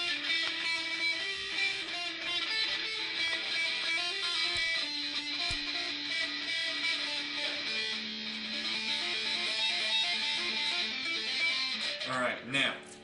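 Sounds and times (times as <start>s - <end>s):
electric guitar riff: 0.0s - 13.0s.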